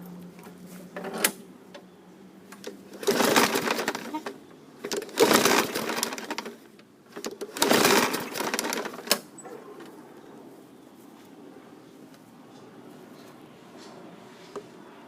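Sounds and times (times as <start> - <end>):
starter rope pull whirring: 2.6 - 9.3.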